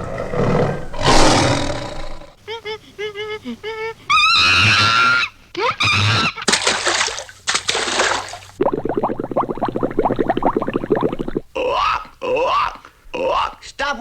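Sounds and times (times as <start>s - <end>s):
tropical bird squawks and screeches: 4.1s - 6.4s.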